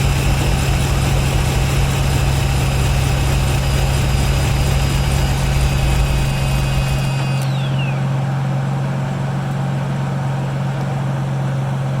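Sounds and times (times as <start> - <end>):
falling whine: 0.0 - 8.6
car engine running: 0.0 - 12.0
steady low hum: 0.0 - 12.0.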